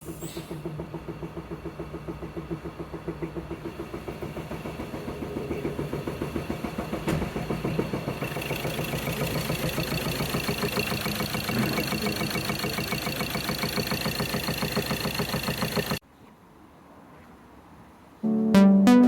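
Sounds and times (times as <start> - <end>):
diesel engine rhythmic knock: 0.5 - 16.0.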